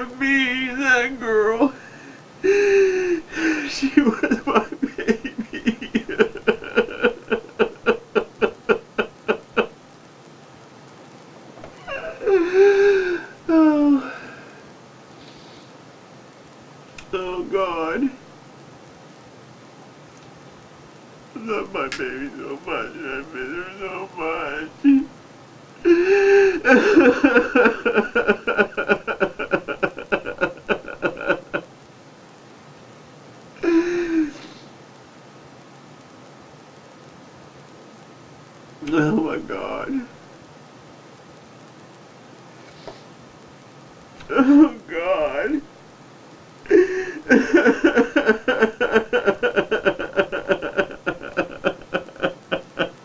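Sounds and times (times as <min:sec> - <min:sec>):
man sobbing: 0:00.0 - 0:09.8, 0:11.6 - 0:14.5, 0:21.4 - 0:25.1, 0:25.8 - 0:31.7, 0:33.6 - 0:34.6, 0:38.8 - 0:40.2, 0:44.2 - 0:45.7, 0:46.6 - 0:53.0.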